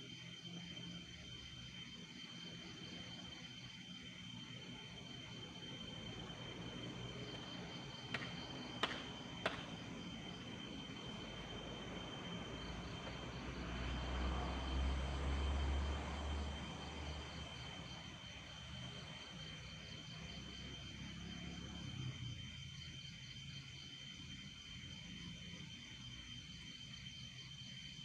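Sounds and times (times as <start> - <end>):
crickets trilling: 0.0 - 28.0.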